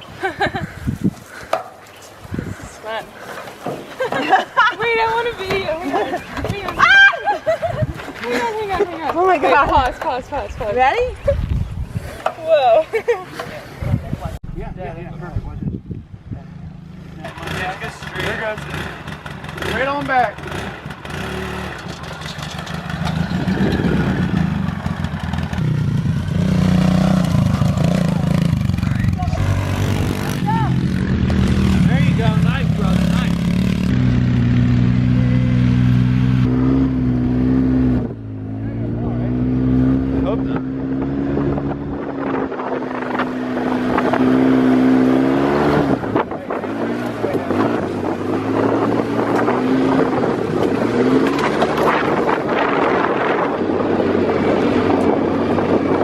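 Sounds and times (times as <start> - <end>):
off-road vehicle engine: 12.1 - 56.0
dirt bike engine running: 16.6 - 37.9.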